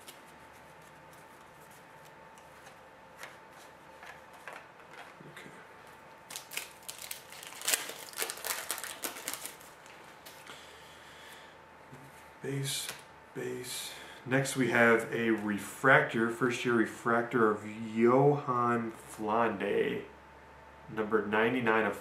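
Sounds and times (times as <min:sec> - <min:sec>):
faint steady hum: 0:00.0 - 0:22.0
card wrapper crinkling: 0:06.2 - 0:10.4.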